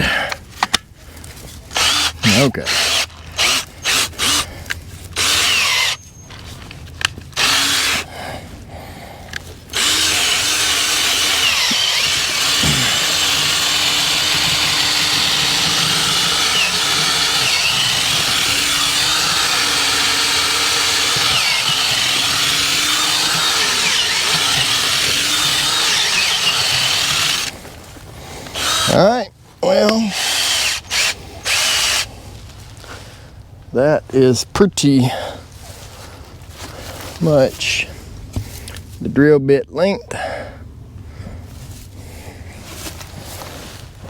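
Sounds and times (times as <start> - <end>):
drill boring into ground: 1.8 - 4.5, 5.2 - 6.0, 7.4 - 8.1, 9.7 - 27.6, 28.6 - 29.0, 30.0 - 32.1.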